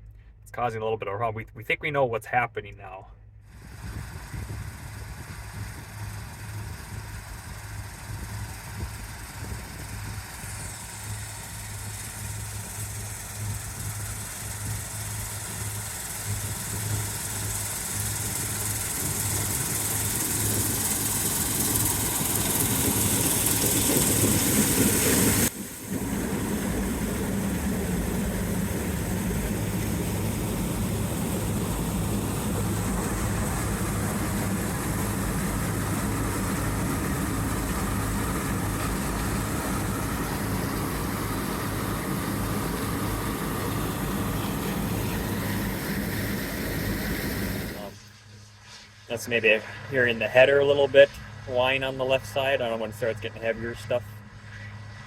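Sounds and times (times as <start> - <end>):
combine engine drone: 0.0 - 55.0
rushing hiss: 9.8 - 50.2.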